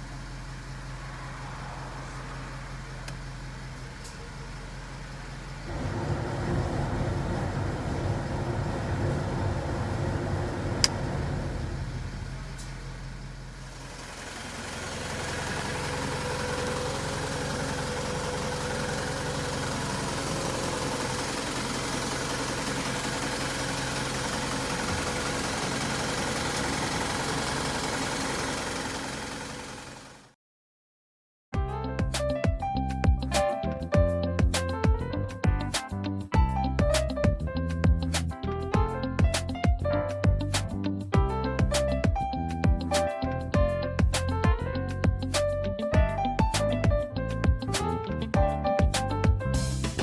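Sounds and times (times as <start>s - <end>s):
truck engine running: 0.0s - 30.3s.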